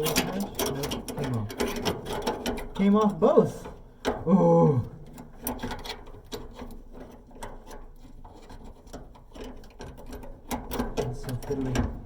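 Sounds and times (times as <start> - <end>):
metal parts clicking and rattling: 0.0 - 3.2, 5.0 - 12.0.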